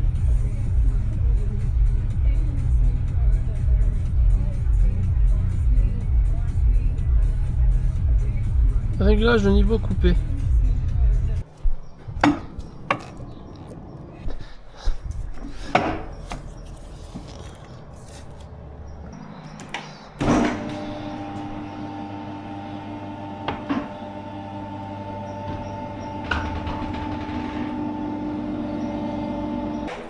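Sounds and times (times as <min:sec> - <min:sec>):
hydraulic pump humming: 0:00.0 - 0:30.0
pump switching on clunk: 0:11.6 - 0:14.0, 0:19.6 - 0:30.0.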